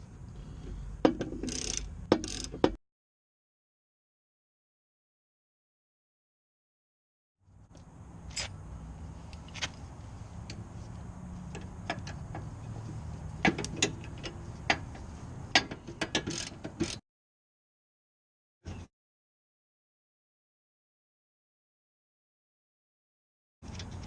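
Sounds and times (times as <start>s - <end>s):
metallic clicks of hand tools: 1.3s - 2.8s.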